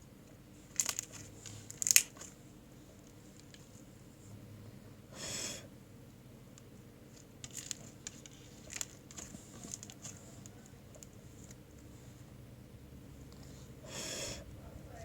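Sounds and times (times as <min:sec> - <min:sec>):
crinkly clicks and crinkles: 0:00.2 - 0:03.9, 0:06.5 - 0:11.9.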